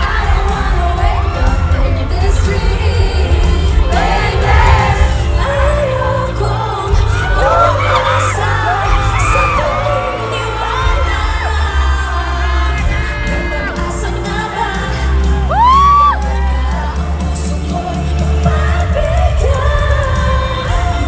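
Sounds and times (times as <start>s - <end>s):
crowd noise: 0.0s - 21.0s
live pop music: 0.0s - 21.0s
person singing: 0.0s - 21.0s
loud voice whooping: 15.5s - 16.6s.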